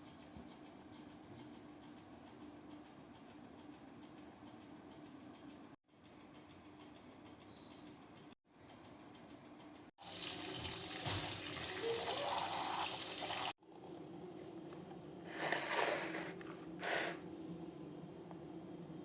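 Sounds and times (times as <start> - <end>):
tap running into sink: 10.2 - 11.8.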